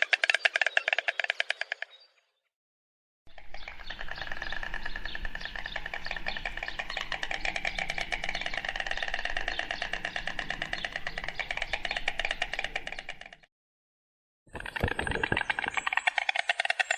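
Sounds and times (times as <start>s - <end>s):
stork clattering its bill: 3.4s - 13.5s, 14.5s - 16.9s.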